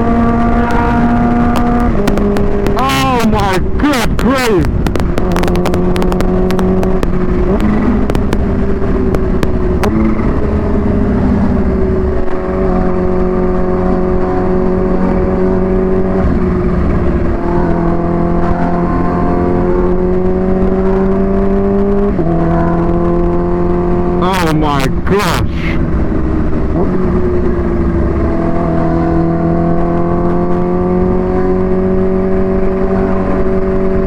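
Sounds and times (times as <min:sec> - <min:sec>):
wind buffeting microphone: 0:00.0 - 0:18.6
motorcycle engine accelerating: 0:00.0 - 0:34.0.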